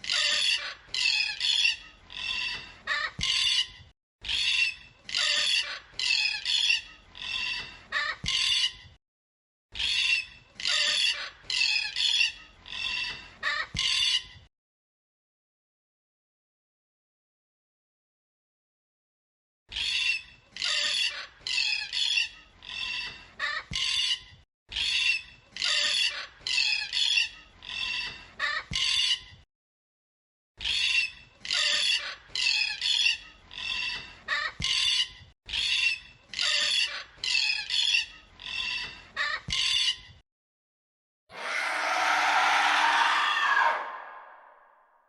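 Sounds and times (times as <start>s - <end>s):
bird calling: 41.3s - 44.8s.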